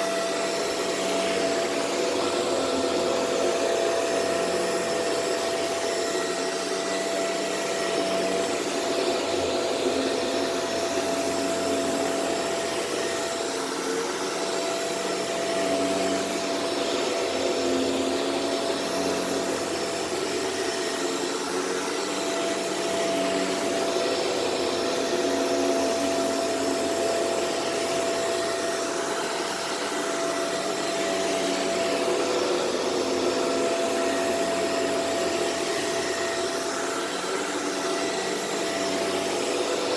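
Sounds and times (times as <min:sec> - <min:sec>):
vacuum cleaner motor hum: 0:00.0 - 0:39.9
vacuum suction on carpet: 0:00.0 - 0:39.9.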